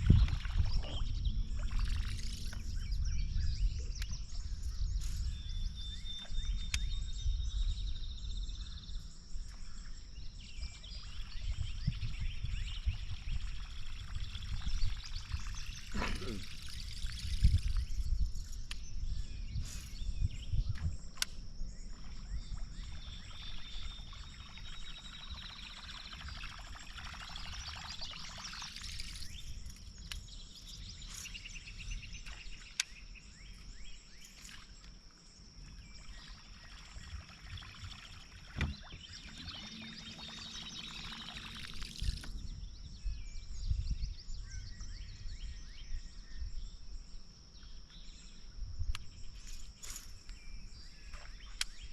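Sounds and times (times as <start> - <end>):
fishing lure churning water: 0.0 - 2.8, 12.8 - 18.0, 21.9 - 29.8, 36.0 - 42.4
wind bumps on microphone: 0.0 - 9.0, 10.2 - 23.8, 37.0 - 46.7
high-pitched insect drone: 11.0 - 18.6, 35.6 - 42.8.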